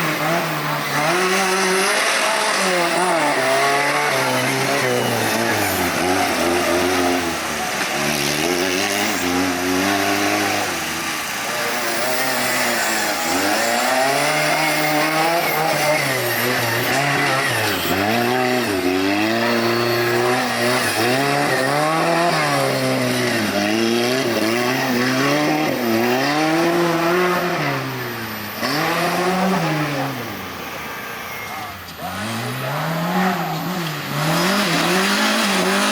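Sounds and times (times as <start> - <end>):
off-road vehicle engine revving: 0.0 - 35.9.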